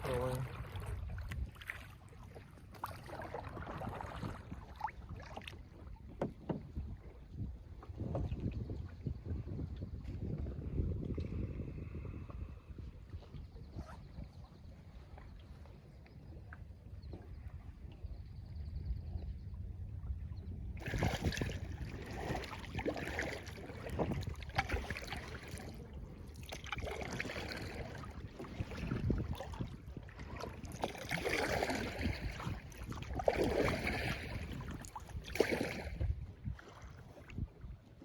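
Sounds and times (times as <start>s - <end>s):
kayak paddle splashing in water: 0.0s - 7.0s, 20.7s - 37.4s.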